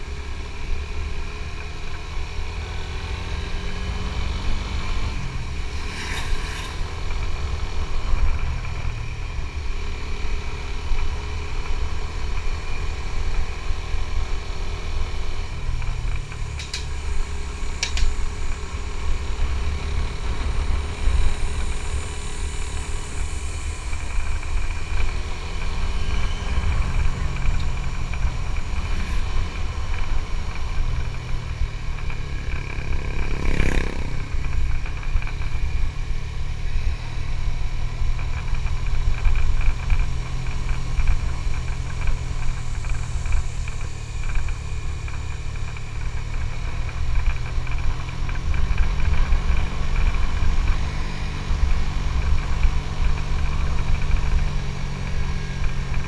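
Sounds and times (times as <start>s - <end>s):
motorcycle engine running: 0.0s - 56.0s.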